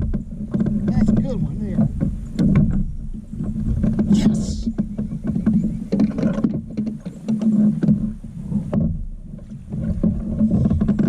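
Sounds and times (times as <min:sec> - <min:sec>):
knocks and taps on kayak: 0:00.0 - 0:11.0
water and wind rumble: 0:00.0 - 0:11.0.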